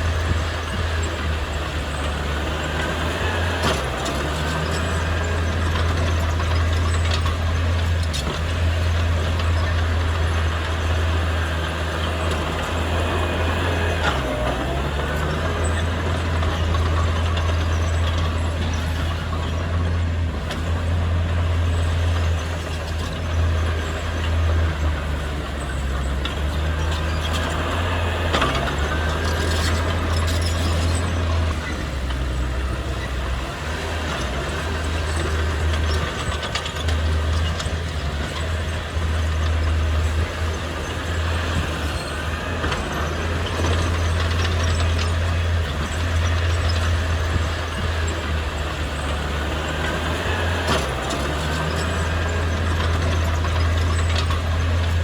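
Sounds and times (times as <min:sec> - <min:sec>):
heavy diesel engine droning: 0:00.0 - 0:55.0
clicks and squeaks: 0:21.7 - 0:55.0.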